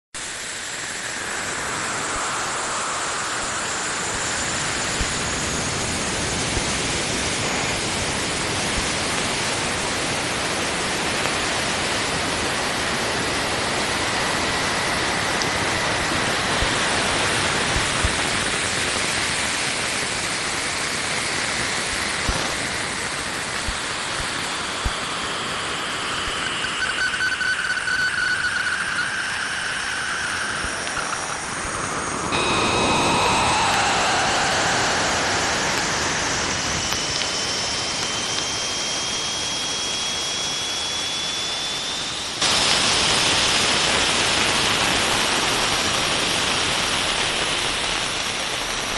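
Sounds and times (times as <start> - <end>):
wavering tone: 0.2 - 6.4, 24.5 - 42.4
gliding whistling tones: 0.2 - 6.6, 24.1 - 42.4
steady hiss: 0.2 - 10.0, 27.8 - 48.9
scattered clicks: 26.1 - 39.1.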